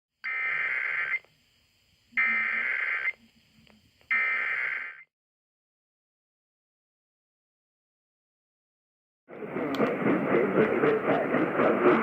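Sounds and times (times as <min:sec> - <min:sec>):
warbling digital data tones: 0:02.2 - 0:03.2.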